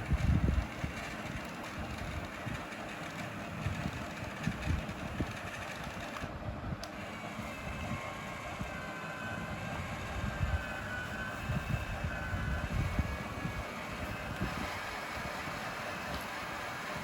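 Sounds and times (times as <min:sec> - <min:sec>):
small electric motor and gearbox: 0:00.0 - 0:17.0
faint high whine: 0:07.4 - 0:17.0.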